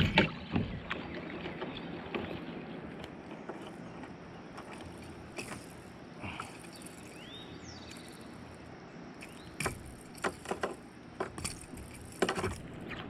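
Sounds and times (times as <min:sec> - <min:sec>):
outdoor background noise: 0:00.0 - 0:13.0
bird chirping: 0:06.3 - 0:10.4
sharp clicks and knocks: 0:09.2 - 0:13.0.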